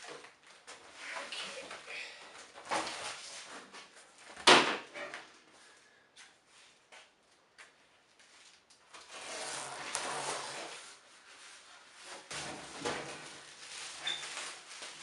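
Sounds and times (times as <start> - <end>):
scraping and rustling: 8.4 - 15.0.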